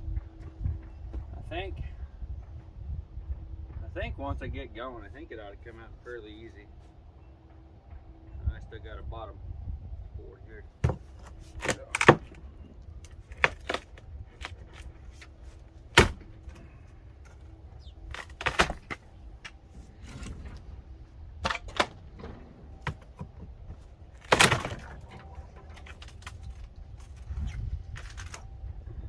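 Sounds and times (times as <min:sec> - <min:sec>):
low steady rumble: 0:00.0 - 0:29.0
sharp knocks and cracks: 0:10.8 - 0:17.4, 0:18.0 - 0:20.6, 0:21.4 - 0:28.6
wooden siding being ripped off: 0:18.1 - 0:19.0, 0:24.2 - 0:25.0.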